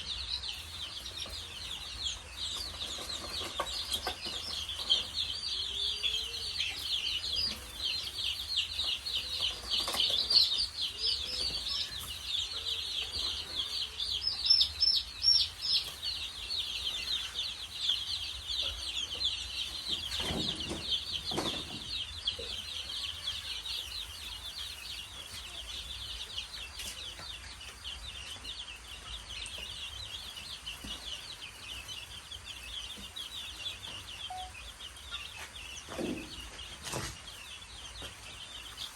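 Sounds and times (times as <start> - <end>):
chicks peeping: 0.0 - 38.9.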